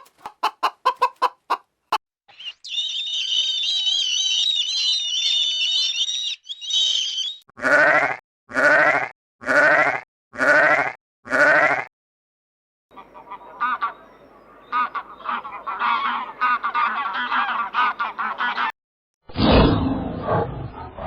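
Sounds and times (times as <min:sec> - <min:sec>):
high wavering squeal-like call: 0:02.3 - 0:07.4
quavering bleats: 0:07.6 - 0:11.9.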